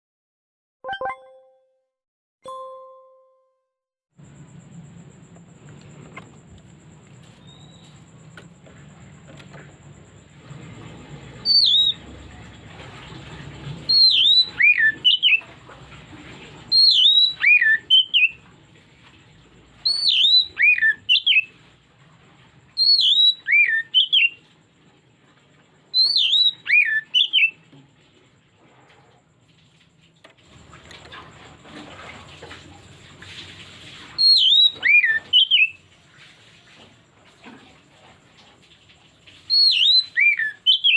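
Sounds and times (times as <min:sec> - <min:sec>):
bird singing whistled notes: 0:07.4 - 0:08.0, 0:11.4 - 0:12.0, 0:13.9 - 0:15.4, 0:16.7 - 0:18.4, 0:19.8 - 0:21.5, 0:22.8 - 0:24.4, 0:26.0 - 0:27.6, 0:34.2 - 0:35.8, 0:39.5 - 0:40.9.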